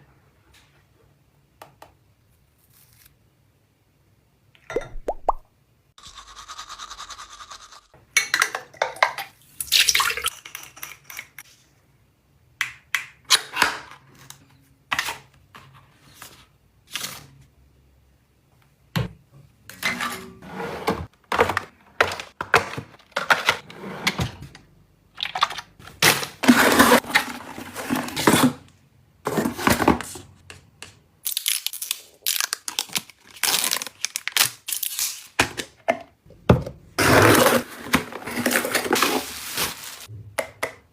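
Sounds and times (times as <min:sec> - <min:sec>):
rustling: 0:37.3 - 0:40.1.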